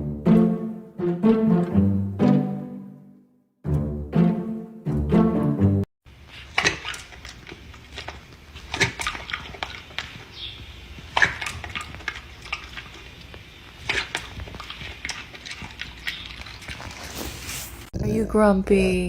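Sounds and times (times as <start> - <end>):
music: 0.0 - 5.9.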